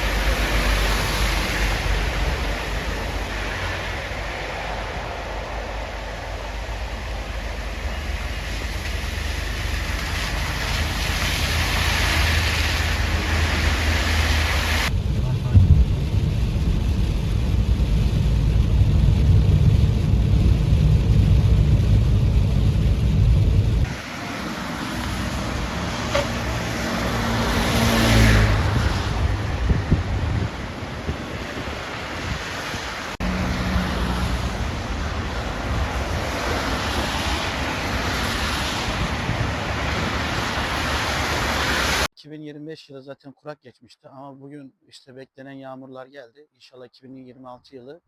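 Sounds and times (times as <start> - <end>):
heavy low rumble: 0.0 - 37.3
tyres hissing on wet road: 0.0 - 42.1.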